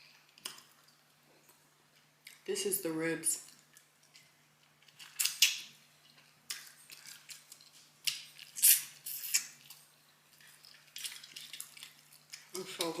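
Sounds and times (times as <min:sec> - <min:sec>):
person chewing ribs: 0:03.5 - 0:13.0
wet smacking mouth noises: 0:03.7 - 0:12.5.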